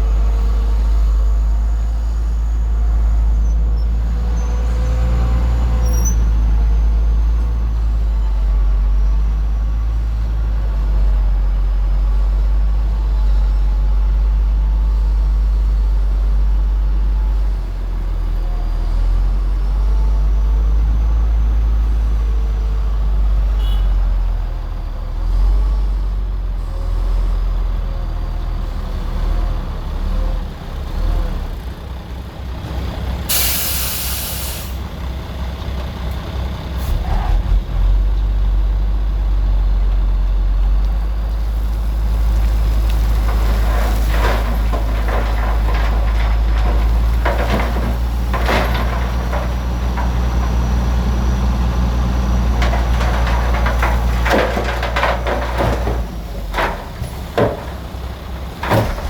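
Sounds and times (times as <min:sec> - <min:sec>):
heavy diesel engine rumbling: 0:00.0 - 0:59.0
loud burst of hissing air: 0:33.3 - 0:34.8.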